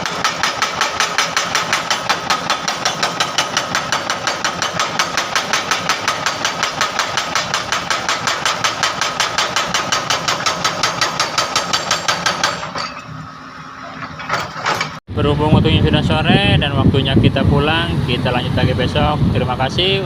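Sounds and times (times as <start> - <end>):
excavator engine running: 0.0 - 12.8
hydraulic breaker hammering asphalt: 0.0 - 13.0.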